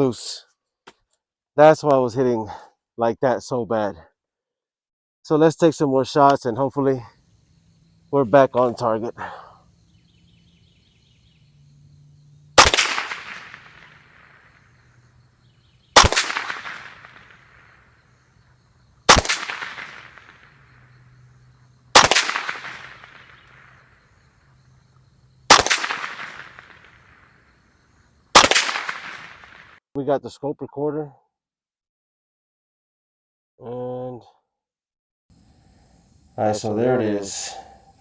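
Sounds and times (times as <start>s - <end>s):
rifle shots: 12.6s - 14.7s, 16.0s - 17.9s, 19.0s - 20.9s, 21.9s - 23.8s, 25.5s - 27.2s, 28.3s - 29.8s.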